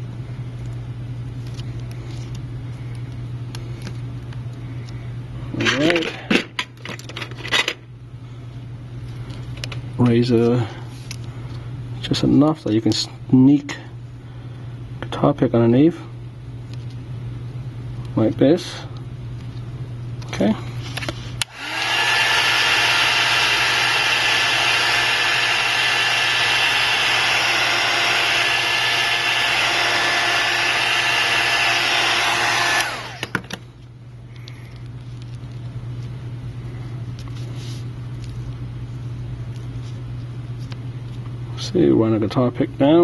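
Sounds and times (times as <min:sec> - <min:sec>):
low steady hum: 0:00.0 - 0:43.0
heat gun blowing: 0:21.4 - 0:33.5.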